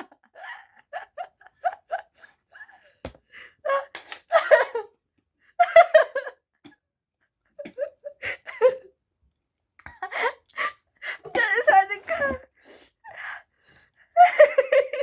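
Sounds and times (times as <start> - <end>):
person giggling and laughing: 0.0 - 2.9, 14.2 - 15.0.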